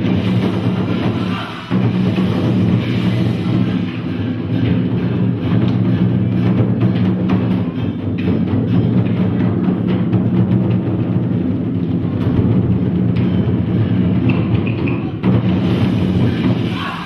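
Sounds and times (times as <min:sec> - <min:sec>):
drum strikes: 0:00.0 - 0:17.0
wood block strikes: 0:02.8 - 0:10.7, 0:11.8 - 0:17.0.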